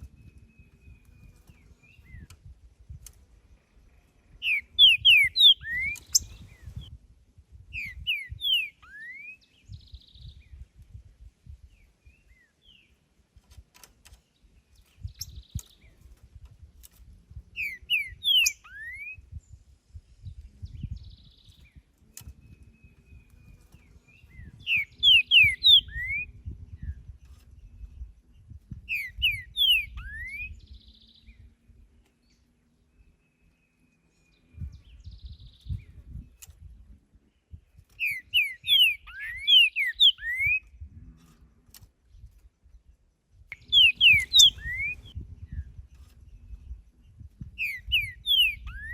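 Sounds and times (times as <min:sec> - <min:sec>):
bird singing slurred whistles: 0:04.4 - 0:06.9, 0:07.7 - 0:10.5, 0:17.6 - 0:19.6, 0:24.2 - 0:26.9, 0:28.9 - 0:31.4, 0:38.0 - 0:40.8, 0:43.6 - 0:45.6, 0:47.6 - 0:48.9.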